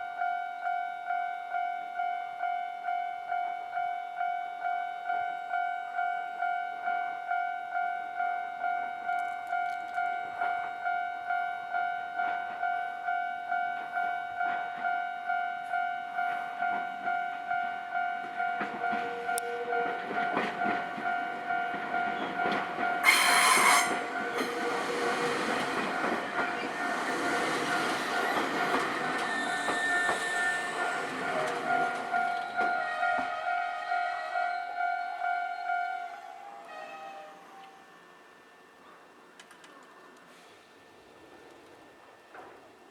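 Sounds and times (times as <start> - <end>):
rumble of train wheels: 1.5 - 42.9
train horn: 18.9 - 20.2, 23.0 - 28.4, 29.2 - 38.0.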